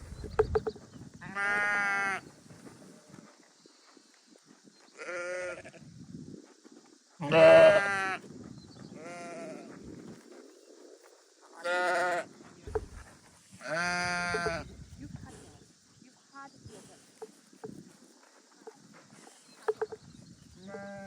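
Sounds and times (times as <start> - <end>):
sheep bleating: 1.3 - 2.2, 7.2 - 8.2, 13.6 - 14.6, 20.6 - 21.0.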